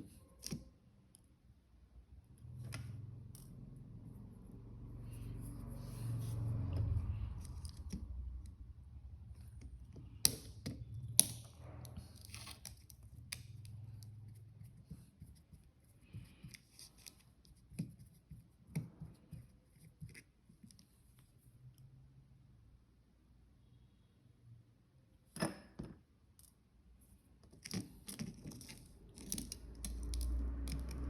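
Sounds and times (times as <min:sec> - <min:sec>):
objects being handled: 0:27.4 - 0:31.0.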